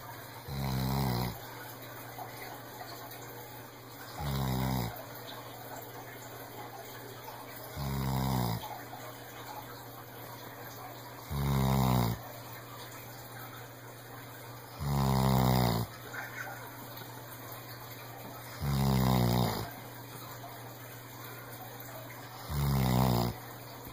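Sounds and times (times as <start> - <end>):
dog snoring: 0.4 - 1.5, 4.1 - 5.1, 7.6 - 8.8, 11.2 - 12.3, 14.7 - 16.6, 18.4 - 19.8, 22.3 - 23.4.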